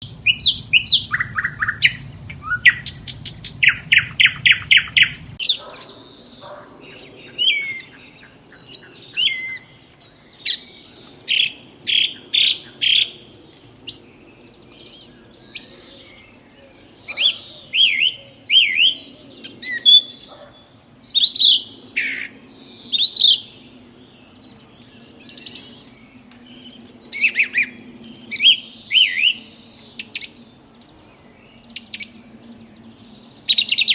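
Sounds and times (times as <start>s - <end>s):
birds chirping: 0.0s - 33.9s.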